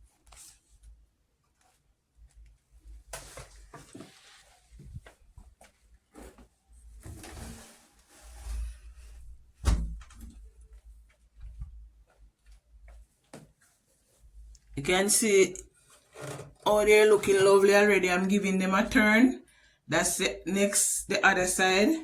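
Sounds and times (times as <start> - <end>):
scrapes and rustles at a pot: 3.0 - 9.5.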